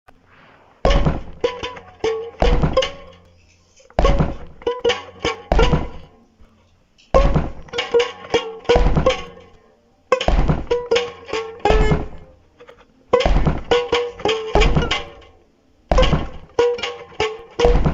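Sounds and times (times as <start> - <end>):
low thud: 0.8 - 1.7, 2.4 - 3.2, 4.0 - 6.1, 7.1 - 7.9, 8.6 - 9.4, 10.2 - 11.0, 13.2 - 15.3, 15.9 - 16.6, 17.6 - 17.9
sharp plucked notes: 0.8 - 17.9.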